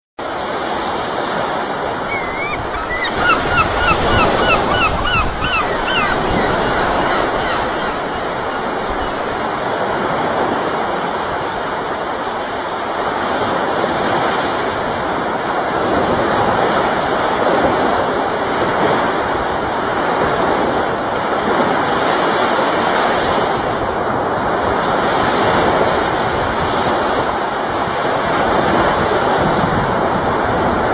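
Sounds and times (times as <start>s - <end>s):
ocean waves breaking: 0.2s - 22.3s
gull calling: 1.9s - 9.7s.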